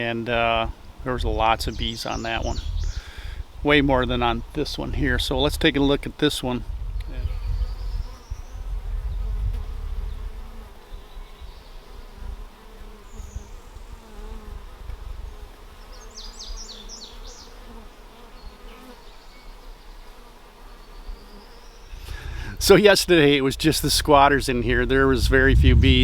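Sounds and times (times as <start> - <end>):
honey bees buzzing: 7.2 - 26.0
low rumble: 23.5 - 26.0.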